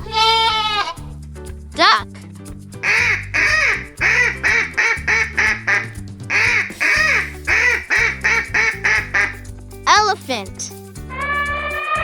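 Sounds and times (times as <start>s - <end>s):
light background music: 0.0s - 12.0s
duck quacking: 2.8s - 9.5s.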